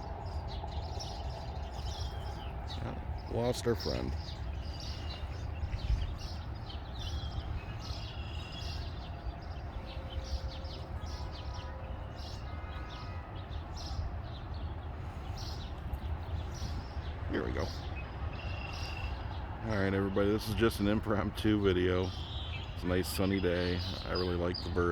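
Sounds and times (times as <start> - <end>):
low background rumble: 0.0 - 23.7
songbirds chirping: 0.0 - 24.9.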